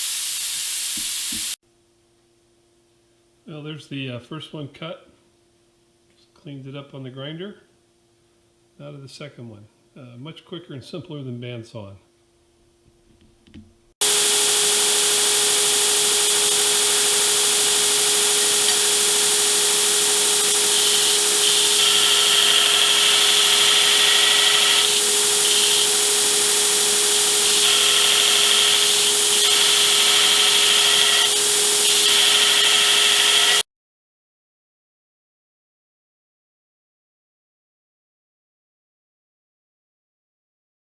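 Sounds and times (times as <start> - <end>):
plasma torch hissing: 0.0 - 1.6
steady hum: 13.8 - 32.4.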